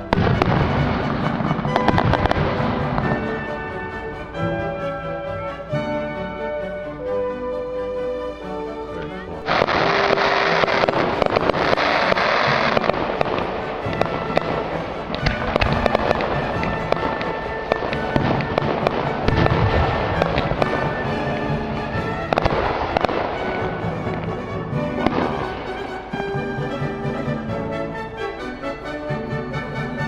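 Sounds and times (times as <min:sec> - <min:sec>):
deep fireworks booms: 0:00.0 - 0:04.0, 0:09.5 - 0:24.2
fireworks bangs and pops: 0:00.0 - 0:04.4, 0:09.5 - 0:24.2
fireworks crackling: 0:00.0 - 0:05.7, 0:09.4 - 0:26.2.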